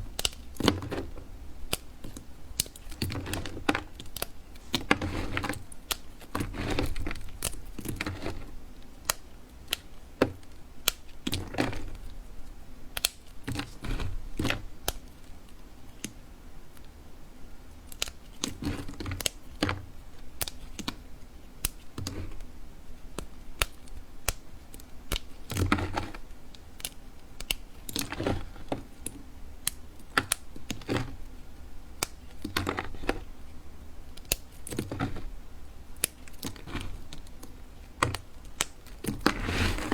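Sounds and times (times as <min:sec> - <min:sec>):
knife crunching through soap: 0:00.1 - 0:12.2, 0:23.1 - 0:31.3, 0:32.0 - 0:33.4, 0:34.1 - 0:35.4, 0:36.0 - 0:39.9.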